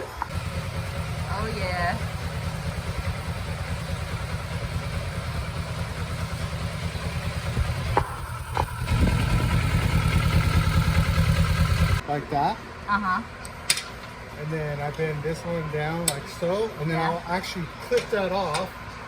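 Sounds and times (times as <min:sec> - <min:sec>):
motorcycle engine idling: 0:00.3 - 0:12.0.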